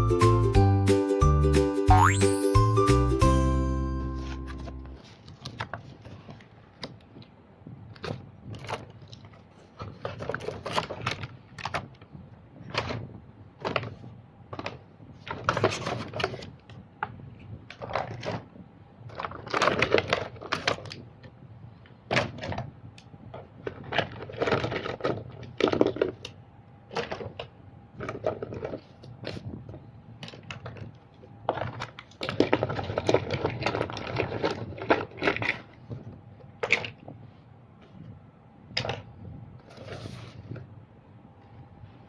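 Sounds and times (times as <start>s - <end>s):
toy vehicles clattering: 23.6s - 28.9s.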